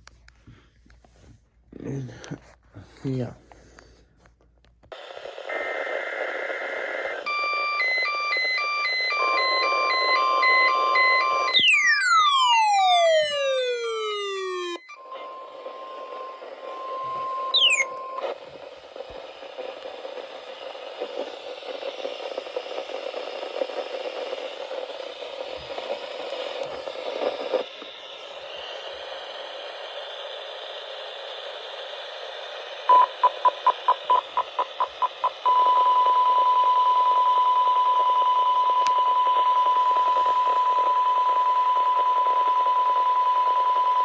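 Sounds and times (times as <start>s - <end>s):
radio static hiss: 4.9s - 7.3s, 12.1s - 35.6s
rapid beeps: 7.3s - 18.2s, 32.9s - 36.7s
falling siren sweep: 10.9s - 18.2s
steady alert tone: 17.6s - 17.9s.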